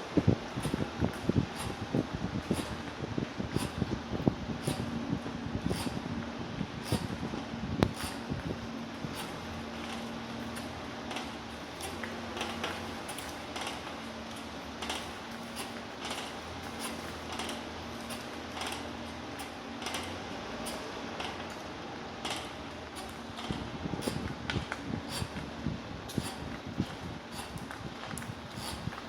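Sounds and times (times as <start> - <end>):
steady low hum: 0.0 - 29.0
short creaks and scrapes: 7.8 - 8.4, 9.0 - 21.6, 22.2 - 25.4, 26.1 - 29.0.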